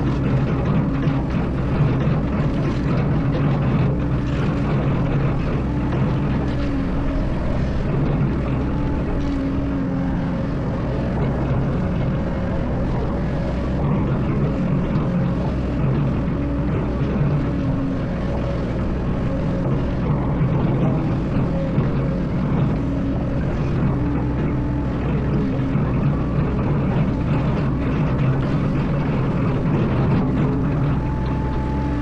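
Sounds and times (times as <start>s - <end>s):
excavator diesel engine running: 0.0s - 32.0s.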